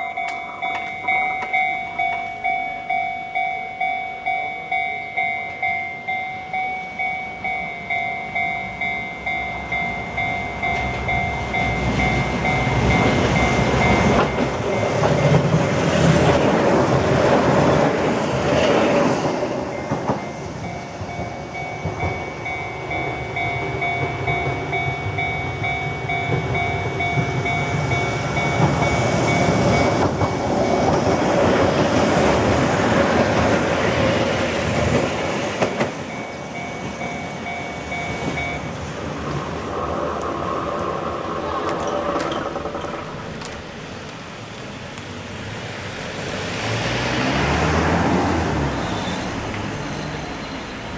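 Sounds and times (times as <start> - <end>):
level crossing bells ringing: 0.0 - 15.7, 19.4 - 33.0, 35.8 - 39.0
train passing over crossing: 0.0 - 50.9
road vehicle passing: 38.7 - 50.9.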